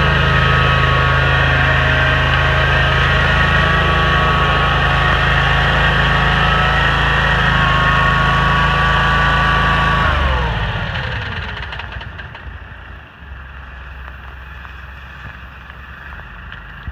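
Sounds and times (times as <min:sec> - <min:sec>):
gasoline engine running: 0:00.0 - 0:16.9
low rumble: 0:00.0 - 0:16.9.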